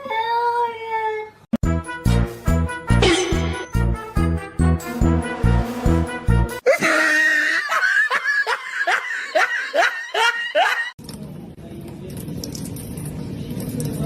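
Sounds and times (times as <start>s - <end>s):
person laughing in high squeals: 6.6s - 10.9s.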